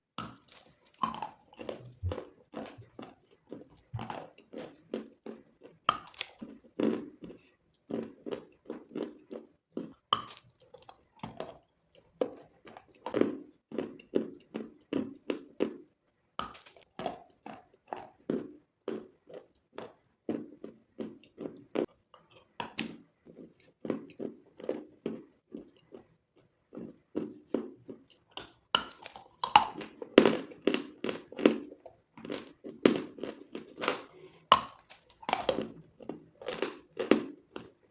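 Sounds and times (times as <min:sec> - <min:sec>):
chalk being bitten and chewed: 0:00.2 - 0:15.6, 0:16.4 - 0:37.9.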